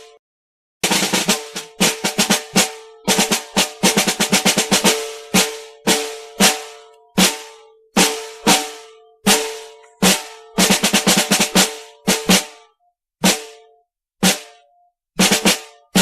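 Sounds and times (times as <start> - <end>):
snare drum strokes: 0.8 - 12.6, 13.2 - 13.6, 14.2 - 14.6.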